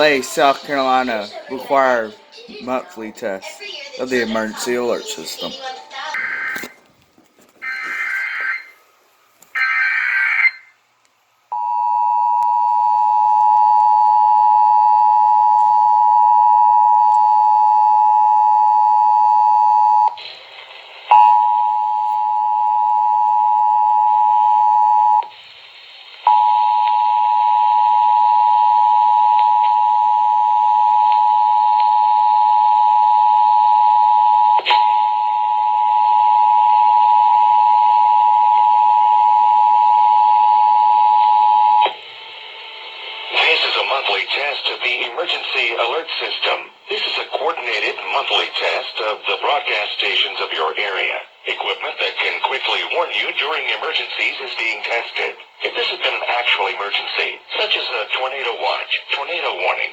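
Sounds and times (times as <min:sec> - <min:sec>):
faint static hiss: 0:00.0 - 0:09.6, 0:20.1 - 0:22.2, 0:25.2 - 0:27.1, 0:41.8 - 0:59.9.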